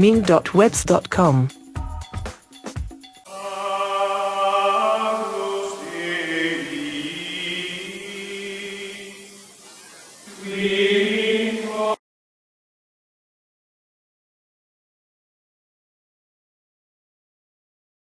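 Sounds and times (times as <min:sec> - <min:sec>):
choral chant: 0:03.3 - 0:09.6, 0:10.3 - 0:12.0.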